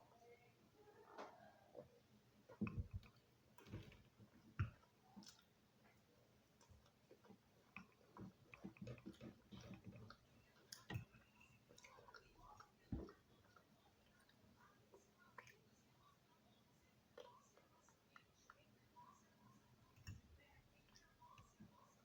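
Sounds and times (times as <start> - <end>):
person chewing: 6.5 - 14.4.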